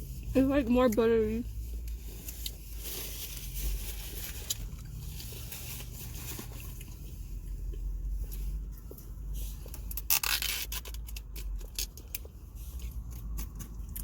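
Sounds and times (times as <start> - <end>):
person chewing food: 6.2 - 9.8, 11.1 - 14.0.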